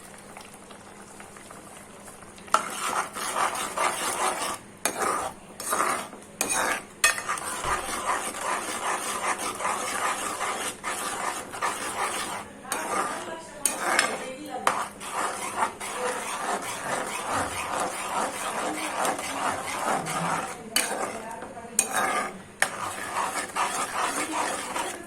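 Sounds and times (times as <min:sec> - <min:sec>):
spoon stirring wet paste: 0:02.5 - 0:25.0.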